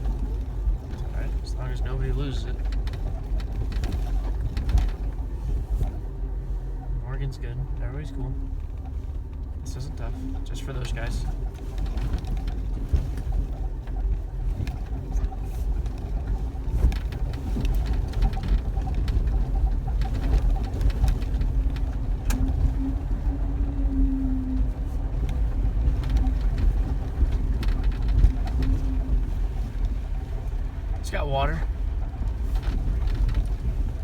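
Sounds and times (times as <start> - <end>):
knocks and rattles: 0.0 - 6.0, 10.7 - 23.4, 24.8 - 31.2
engine and cabin rumble: 0.0 - 34.0.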